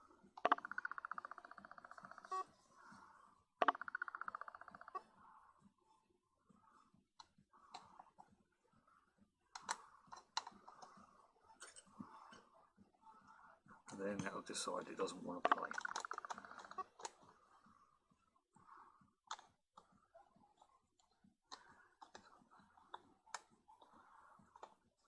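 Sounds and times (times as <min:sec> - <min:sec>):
rapid even clicking of lens: 0:15.4 - 0:17.2.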